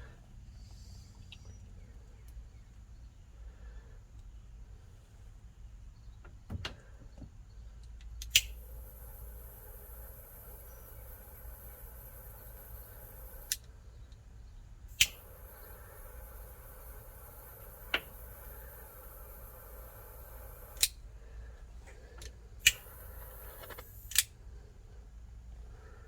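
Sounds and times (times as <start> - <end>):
low steady hum: 0.0 - 26.0
wire cutter snipping clicks: 7.8 - 8.6, 13.4 - 14.2, 14.9 - 15.3, 20.7 - 21.0, 23.6 - 24.3.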